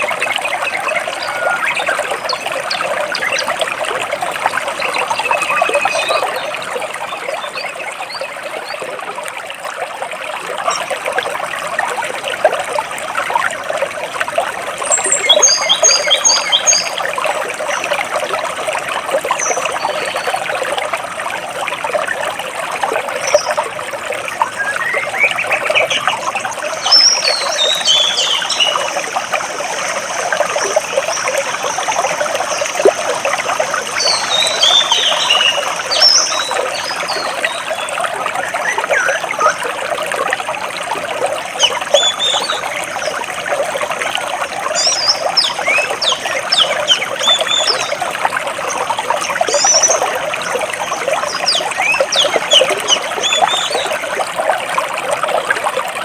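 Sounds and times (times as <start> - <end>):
water running between rocks: 0.0 - 56.0
birds chirping: 24.3 - 32.9, 33.8 - 39.6, 41.5 - 43.2, 44.8 - 48.0, 48.7 - 54.0.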